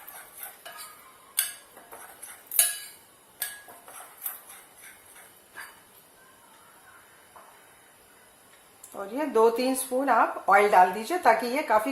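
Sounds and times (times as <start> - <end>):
utensil scraping mixing bowl: 0.0 - 1.0, 1.8 - 2.7, 3.7 - 5.8.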